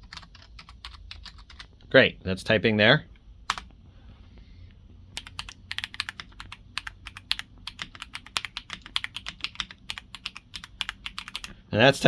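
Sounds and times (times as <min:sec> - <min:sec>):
mechanical keyboard typing: 0:00.0 - 0:01.7, 0:03.5 - 0:03.7, 0:05.2 - 0:11.5.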